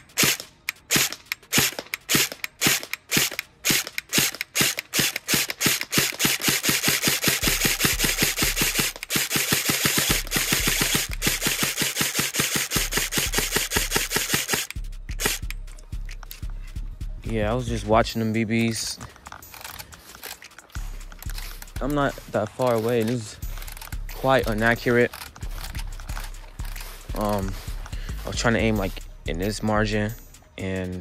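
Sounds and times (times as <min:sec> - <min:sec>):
airsoft rifle firing: 0:00.0 - 0:15.5.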